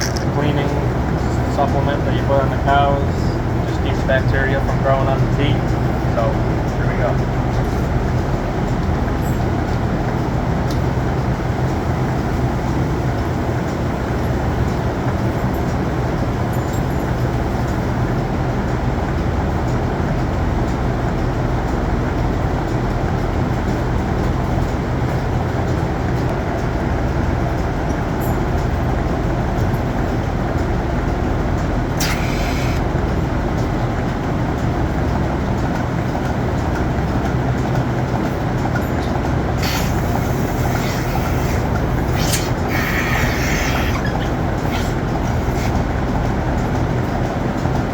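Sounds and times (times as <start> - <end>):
machinery drone: 0.0 - 19.8, 26.4 - 47.9
brief hiss: 32.0 - 32.8.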